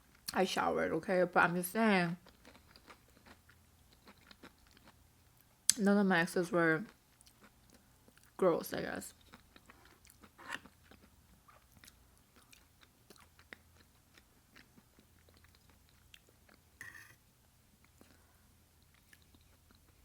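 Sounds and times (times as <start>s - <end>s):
chewing and biting food: 2.2s - 5.5s, 6.9s - 8.4s, 9.1s - 16.6s.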